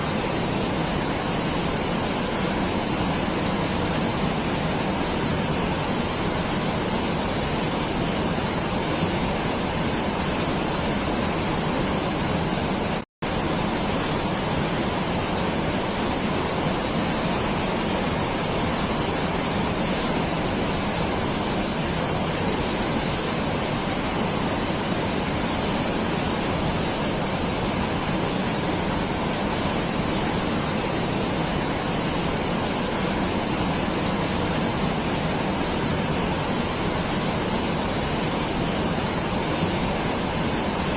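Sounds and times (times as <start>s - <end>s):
steady rushing noise: 0.0s - 40.9s.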